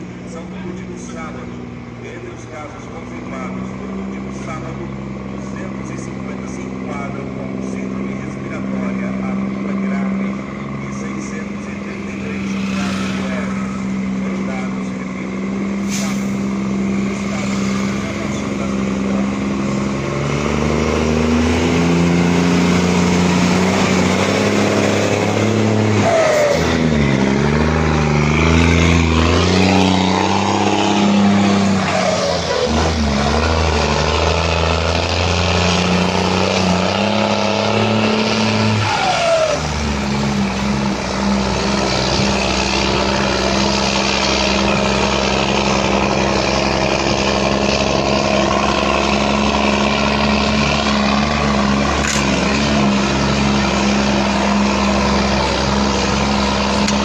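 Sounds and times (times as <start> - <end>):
diesel truck engine rumbling: 0.0 - 57.0.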